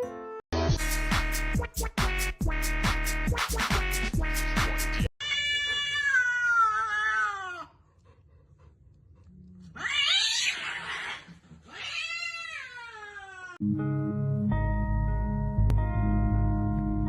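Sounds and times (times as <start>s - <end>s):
electronic dance music: 0.7s - 5.1s
cat meowing: 5.2s - 7.7s, 9.8s - 13.6s
cat yowling: 5.2s - 7.8s, 9.8s - 13.6s.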